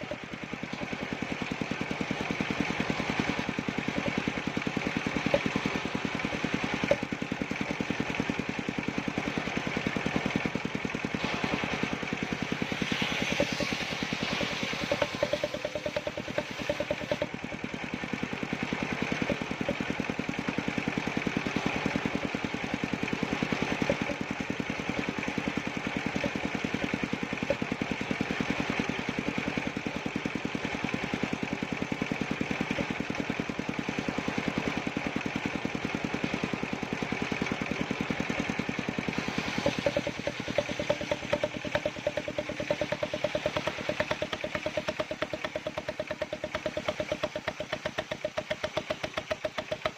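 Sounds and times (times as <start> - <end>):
constant higher hum: 0.0 - 20.1, 32.5 - 49.9
engine running steadily: 0.0 - 49.9.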